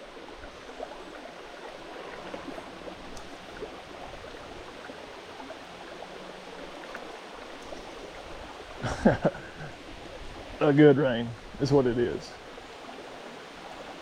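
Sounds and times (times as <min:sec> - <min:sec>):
creek running: 0:00.0 - 0:14.0
rain falling: 0:08.8 - 0:12.4.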